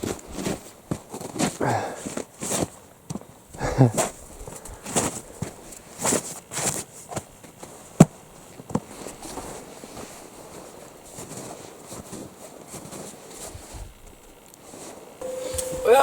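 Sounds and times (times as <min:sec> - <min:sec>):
footsteps crunching in snow: 0:00.0 - 0:16.0.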